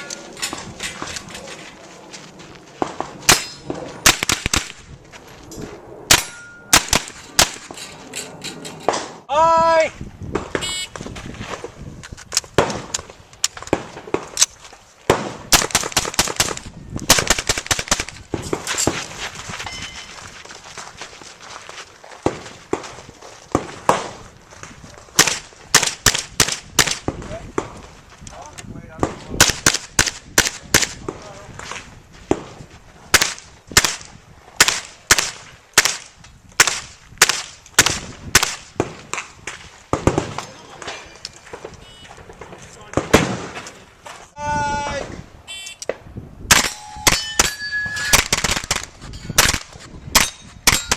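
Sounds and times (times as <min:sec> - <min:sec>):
carbine gunshots: 0:02.8 - 0:04.8, 0:06.1 - 0:07.8, 0:15.1 - 0:18.7, 0:25.2 - 0:27.8, 0:33.1 - 0:39.3, 0:46.5 - 0:50.9.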